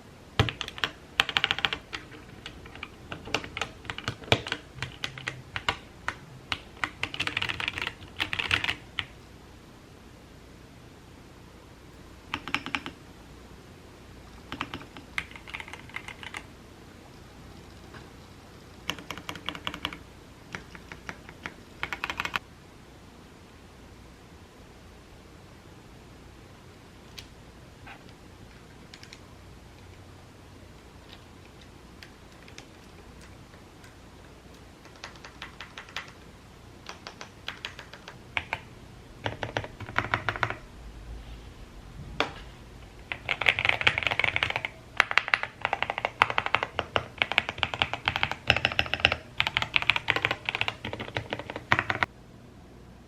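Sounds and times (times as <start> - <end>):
mechanical keyboard typing: 0.4 - 9.2, 12.3 - 13.0, 14.4 - 16.5, 18.8 - 22.4, 28.8 - 29.2, 31.1 - 34.0, 34.8 - 40.6, 43.0 - 52.1.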